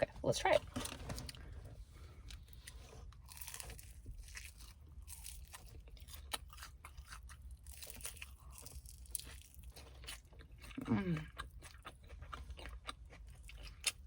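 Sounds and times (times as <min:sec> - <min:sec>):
fried chicken crunching: 0:03.0 - 0:14.0.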